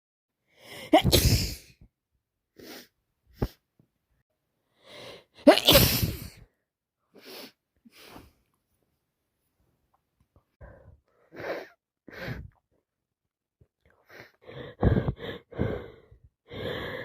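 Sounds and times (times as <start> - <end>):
woman sneezing: 0.9 - 1.7, 5.5 - 6.4.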